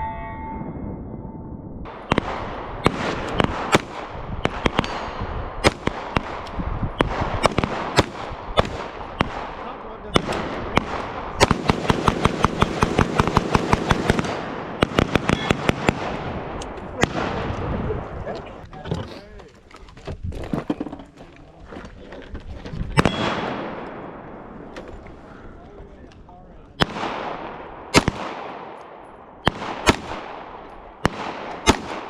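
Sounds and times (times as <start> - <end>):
pistol shots: 1.9 - 17.6, 23.0 - 24.7, 26.8 - 32.0.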